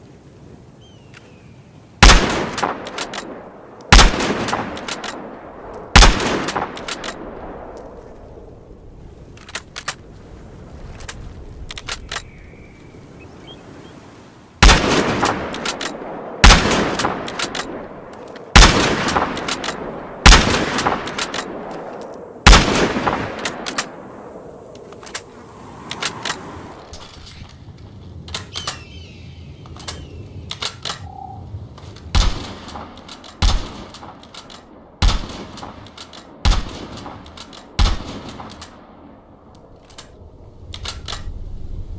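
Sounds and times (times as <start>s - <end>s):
rifle bolt clicks and knocks: 2.5s - 8.1s, 9.3s - 10.1s, 10.9s - 12.3s, 15.2s - 16.1s, 16.9s - 19.9s, 20.7s - 22.3s, 23.0s - 24.0s, 24.7s - 28.9s, 29.6s - 31.1s, 31.8s - 38.9s, 39.5s - 41.3s.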